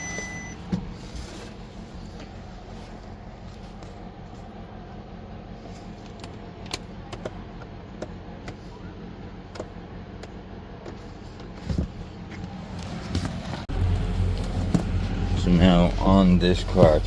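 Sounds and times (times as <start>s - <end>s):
engine idling: 0.0s - 17.0s.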